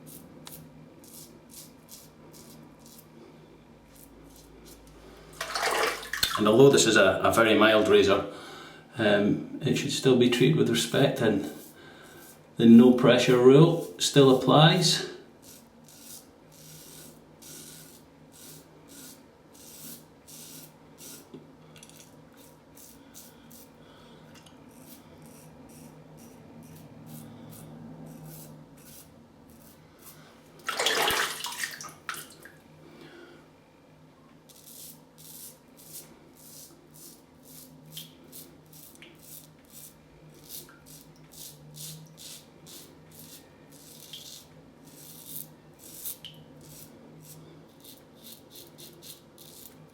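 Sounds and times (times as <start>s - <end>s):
razor scraping stubble: 0.0s - 3.1s, 3.9s - 4.9s, 10.4s - 23.8s, 24.7s - 30.2s, 34.5s - 49.9s.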